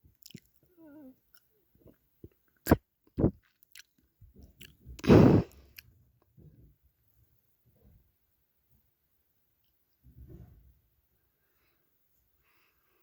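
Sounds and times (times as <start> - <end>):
breathy puff: 5.0 - 5.7.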